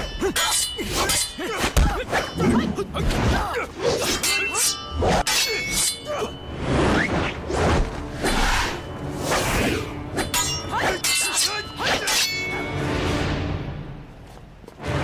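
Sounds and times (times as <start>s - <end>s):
dramatic background music: 0.0s - 15.0s
hard strikes with metallic ring: 10.2s - 12.8s.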